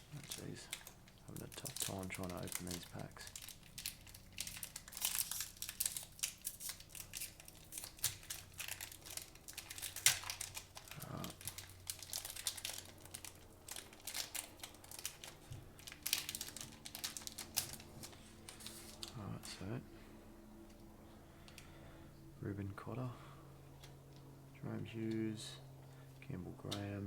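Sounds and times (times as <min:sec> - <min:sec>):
card pack wrappers crinkling and tearing: 0:00.0 - 0:19.8.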